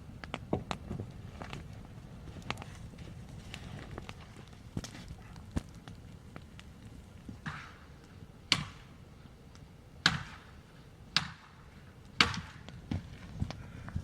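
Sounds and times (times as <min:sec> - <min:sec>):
wood being chopped: 0:07.4 - 0:07.8, 0:08.5 - 0:08.8, 0:10.1 - 0:10.5, 0:11.2 - 0:11.6, 0:12.2 - 0:13.0.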